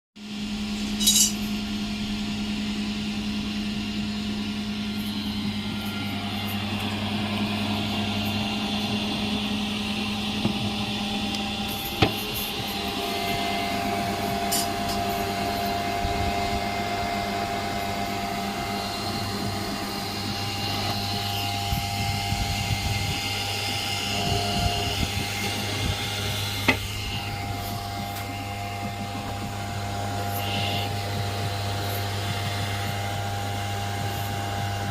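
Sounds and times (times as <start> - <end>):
low machine hum: 0.2 - 34.9
high whining tones: 0.7 - 34.9.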